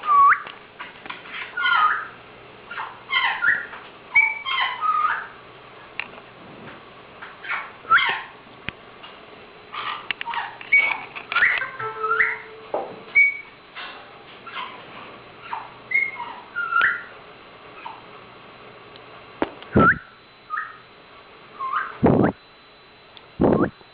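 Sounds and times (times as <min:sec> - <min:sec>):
parrot whistling and chirping: 0:00.0 - 0:00.6, 0:01.5 - 0:05.4, 0:07.4 - 0:08.3, 0:09.8 - 0:13.6, 0:15.4 - 0:17.2, 0:19.8 - 0:20.8, 0:21.6 - 0:22.4.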